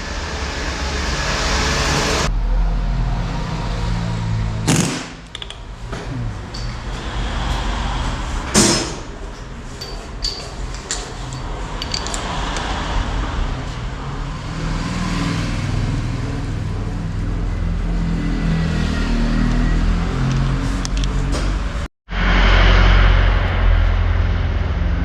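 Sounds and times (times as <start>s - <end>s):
hum of vehicle engines: 0.0s - 25.0s
tool clicks: 4.8s - 5.6s.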